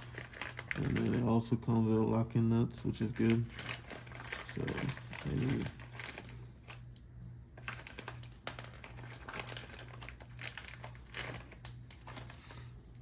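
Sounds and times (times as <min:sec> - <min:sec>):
low steady hum: 0:00.0 - 0:13.0
metal hardware clicking and rattling: 0:03.3 - 0:06.4, 0:07.7 - 0:13.0.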